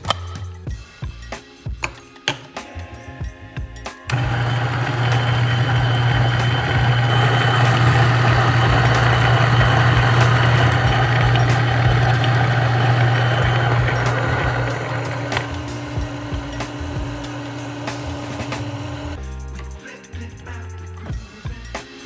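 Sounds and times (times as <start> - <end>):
coffee grinder motor humming: 4.1 - 19.2.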